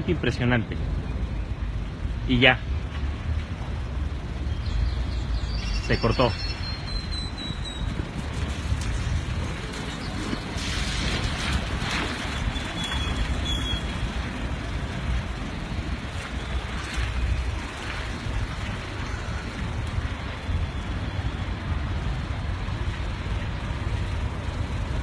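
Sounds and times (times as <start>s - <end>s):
low outdoor rumble: 6.7s - 25.0s.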